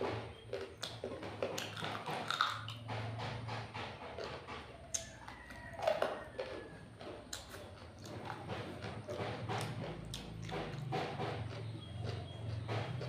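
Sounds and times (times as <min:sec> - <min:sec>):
wet chewing and lip-smacking: 0:00.0 - 0:13.0.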